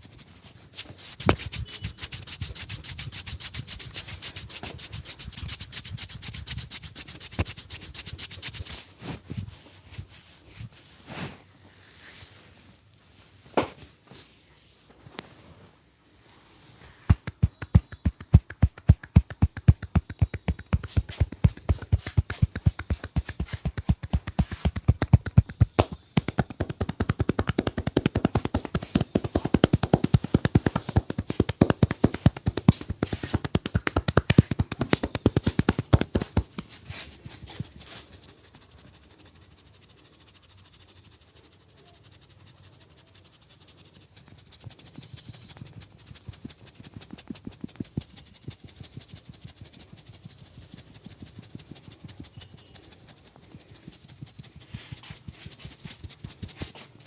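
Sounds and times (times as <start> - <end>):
hands slapping and tapping: 0.8 - 2.8, 6.7 - 8.7, 17.1 - 38.0, 50.7 - 57.0.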